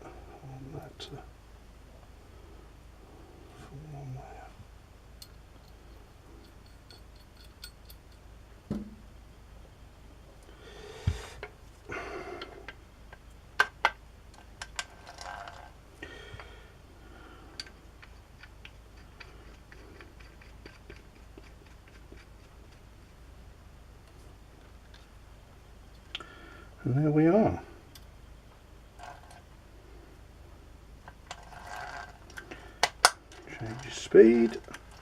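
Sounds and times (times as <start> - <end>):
small metal clicks and ticks: 5.2 - 8.3, 31.0 - 35.0
loud knock: 8.7 - 9.0.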